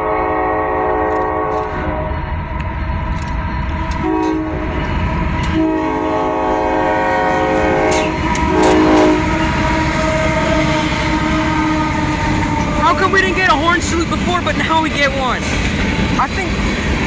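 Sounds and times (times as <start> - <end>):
locomotive air horn: 0.0 - 2.4, 3.9 - 4.8, 5.4 - 14.1
freight train rumbling past: 0.0 - 17.0.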